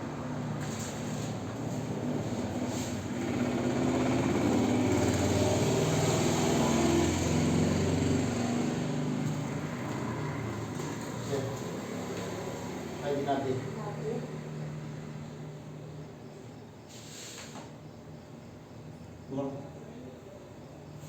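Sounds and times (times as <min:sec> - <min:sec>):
engine running: 0:01.6 - 0:13.2.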